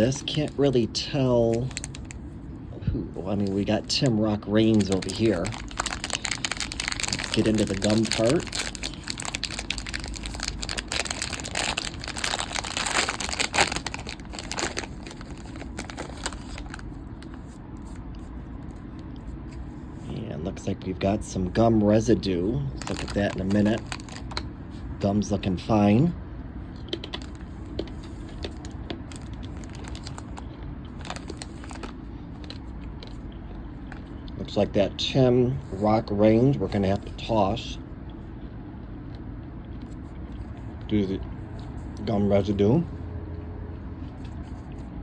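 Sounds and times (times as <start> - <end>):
wrapper crinkling and tearing: 0.0 - 2.2, 3.3 - 17.4, 22.7 - 24.4, 27.1 - 33.2
low background hum: 0.0 - 45.0
trading cards clicking and rustling: 3.3 - 17.4.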